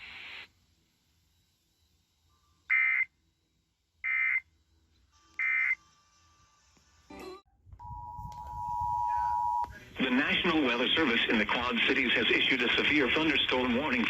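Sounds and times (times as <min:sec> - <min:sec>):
static hiss: 0:00.0 - 0:03.1
buzzy digital data bursts: 0:04.0 - 0:04.5, 0:05.2 - 0:07.1.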